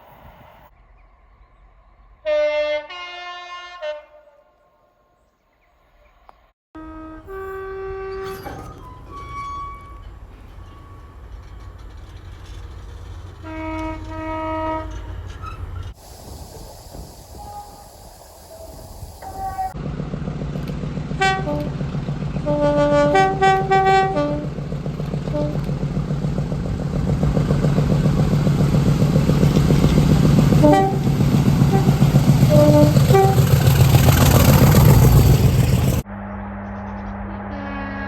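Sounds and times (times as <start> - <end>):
train air horn blasts: 2.2 - 4.6, 6.8 - 8.6, 13.4 - 19.8, 21.2 - 21.8, 22.4 - 24.6, 25.2 - 25.8, 29.6 - 35.7, 37.5 - 38.0
train rumble: 6.8 - 36.1
rising hiss: 14.5 - 19.8.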